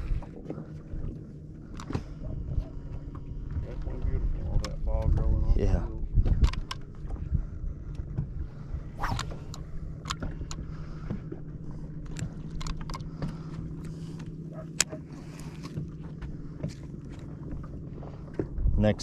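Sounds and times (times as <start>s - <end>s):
electric boat motor humming: 0.0s - 5.2s, 6.0s - 18.8s.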